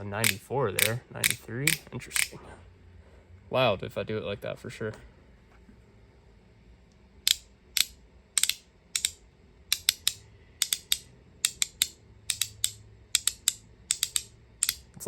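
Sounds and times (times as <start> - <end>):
magnetic fidget coin clicking: 0.2 - 2.3, 7.2 - 14.9.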